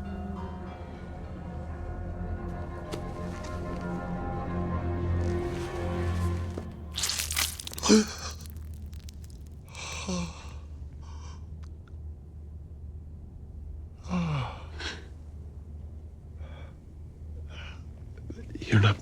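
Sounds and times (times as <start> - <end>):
person sighing: 7.5 - 8.6
person gasping: 7.6 - 8.6.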